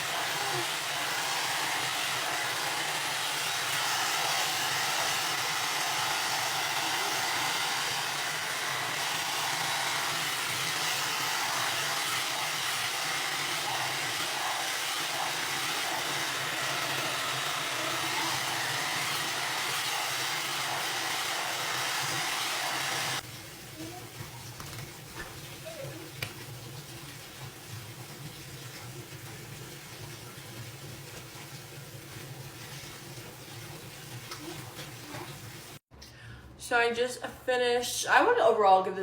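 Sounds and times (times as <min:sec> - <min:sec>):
hair dryer blowing: 0:00.0 - 0:23.2.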